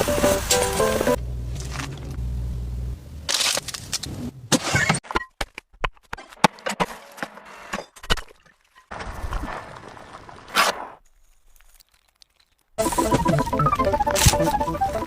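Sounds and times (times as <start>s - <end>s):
sharp cracks and crunching clicks: 3.3s - 4.2s, 11.5s - 12.8s.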